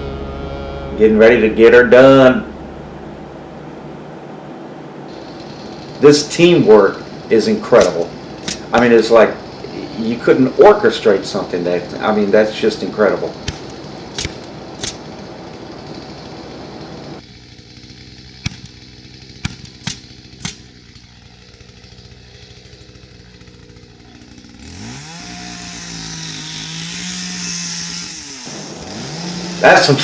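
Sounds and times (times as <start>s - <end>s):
power tool motor running: 5.1s - 30.0s
sharp knocks: 7.8s - 8.9s, 13.4s - 15.1s, 18.4s - 18.8s, 19.4s - 20.6s.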